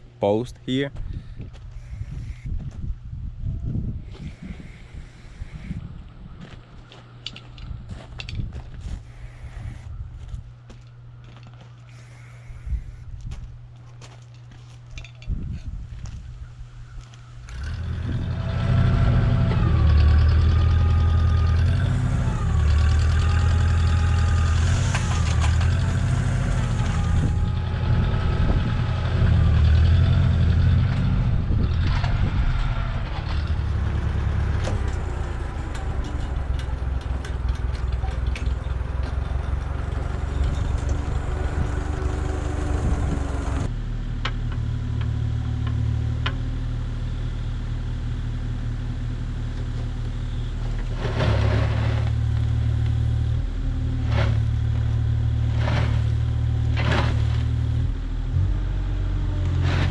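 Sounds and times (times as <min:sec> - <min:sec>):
machinery engine running: 0:01.6 - 0:02.5, 0:04.0 - 0:05.9, 0:09.0 - 0:09.9, 0:17.5 - 0:59.9.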